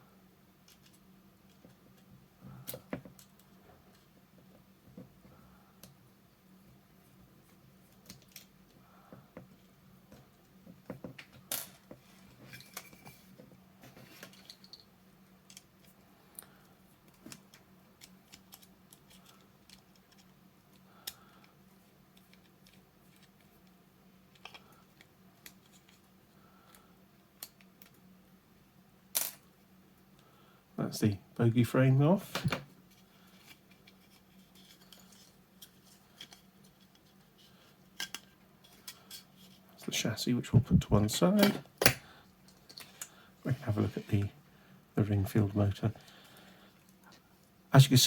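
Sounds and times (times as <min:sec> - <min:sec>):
faint low hum: 0:00.0 - 0:48.0
clicks and scrapes of small parts: 0:00.6 - 0:04.1, 0:07.9 - 0:08.8, 0:10.9 - 0:28.0, 0:32.9 - 0:39.7, 0:41.3 - 0:43.2.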